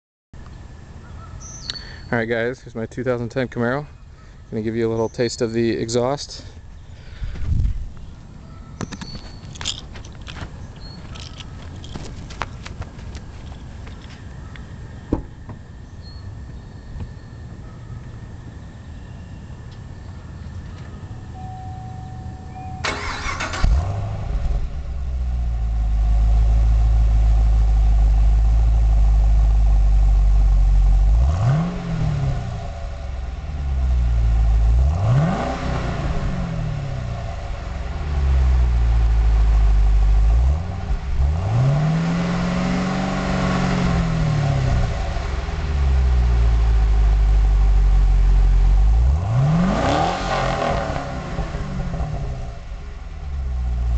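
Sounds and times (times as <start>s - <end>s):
engine cranking: 9.0s - 14.1s, 22.8s - 24.1s
car engine idling and revving: 19.7s - 53.9s.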